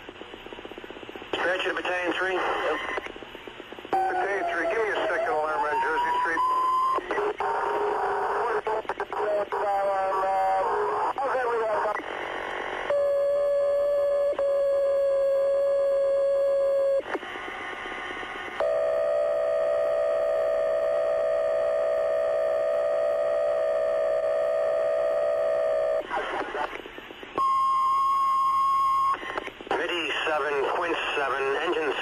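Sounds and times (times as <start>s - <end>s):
radio hiss: 0.0s - 12.9s, 17.0s - 18.6s, 26.0s - 27.4s, 29.1s - 32.0s
radio alert tones: 4.0s - 10.9s.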